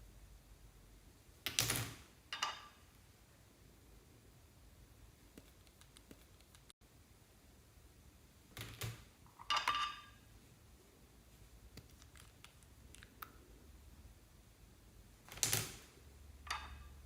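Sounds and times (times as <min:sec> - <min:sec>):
slime squelching crackles: 0:11.7 - 0:13.4.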